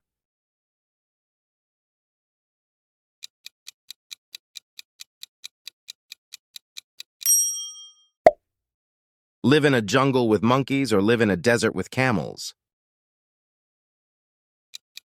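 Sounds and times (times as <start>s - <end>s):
ringing chime: 7.3s - 8.0s.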